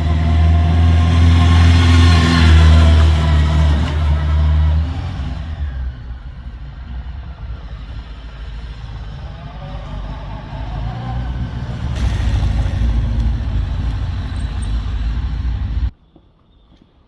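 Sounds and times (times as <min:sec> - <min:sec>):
motorcycle engine running: 0:05.9 - 0:15.9.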